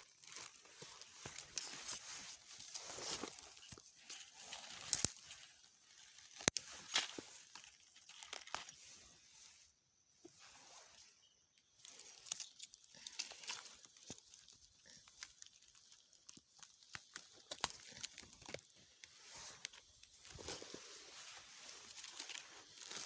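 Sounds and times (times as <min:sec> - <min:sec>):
dry leaves rustling and crackling: 0:13.1 - 0:23.0.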